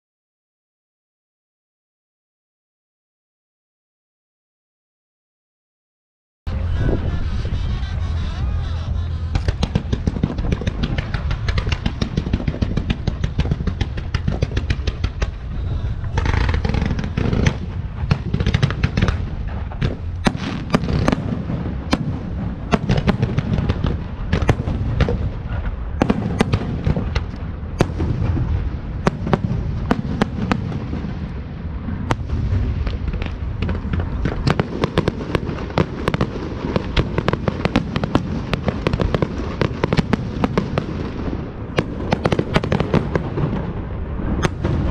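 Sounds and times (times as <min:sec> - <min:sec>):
fireworks bangs and crackles: 0:06.5 - 0:44.9
low rumble of booms: 0:09.1 - 0:36.1, 0:41.2 - 0:44.9.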